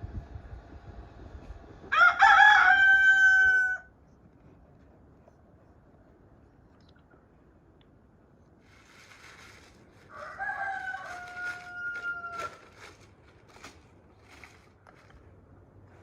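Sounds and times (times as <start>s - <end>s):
rooster crowing: 1.9s - 3.9s, 10.1s - 12.9s.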